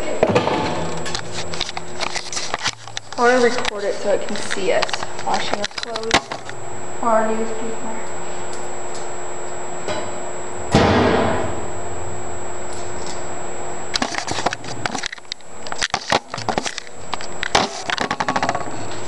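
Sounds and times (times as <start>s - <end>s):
steady hum: 0.0s - 19.0s
clicks and clatters: 1.1s - 6.5s
loud bang: 10.7s - 11.7s.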